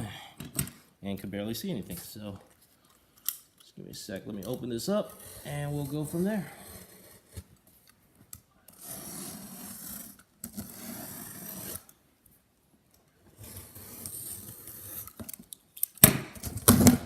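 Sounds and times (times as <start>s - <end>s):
cardboard packaging scraping: 8.7s - 11.9s, 13.3s - 15.2s.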